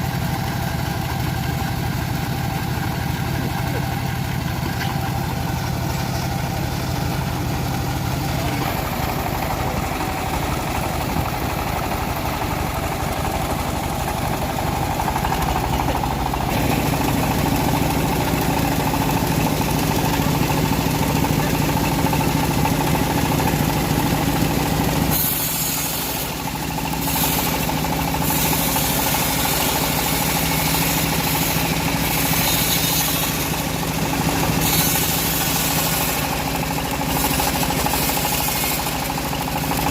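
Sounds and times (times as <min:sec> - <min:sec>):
band saw cutting wood: 0:08.1 - 0:39.9
loud hiss: 0:25.0 - 0:36.4.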